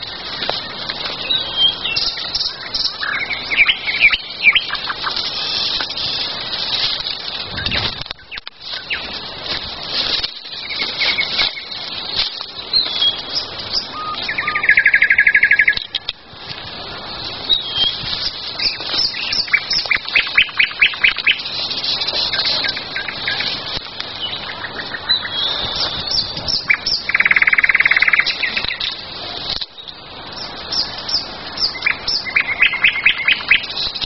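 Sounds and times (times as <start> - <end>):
songbirds singing: 0.0 - 6.6, 7.3 - 9.3, 10.0 - 16.2, 16.8 - 34.0
fast bird trill: 1.2 - 6.3, 12.7 - 15.9, 17.5 - 21.6, 24.2 - 28.9, 30.4 - 34.0.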